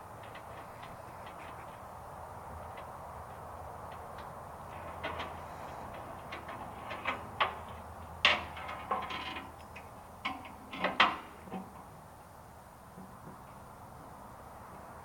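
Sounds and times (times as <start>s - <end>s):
sharp knocks and clanks: 3.9s - 11.9s.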